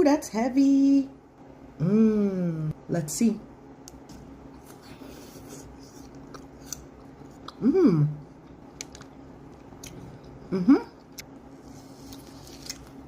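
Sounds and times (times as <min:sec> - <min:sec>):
person humming: 0:01.8 - 0:02.8, 0:07.5 - 0:08.2, 0:10.4 - 0:11.0
crunchy chewing: 0:04.6 - 0:07.6, 0:11.0 - 0:13.0.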